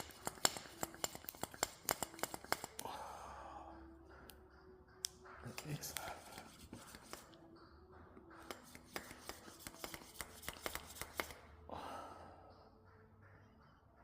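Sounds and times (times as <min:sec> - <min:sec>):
clicks and taps on bike parts: 0:00.0 - 0:02.8.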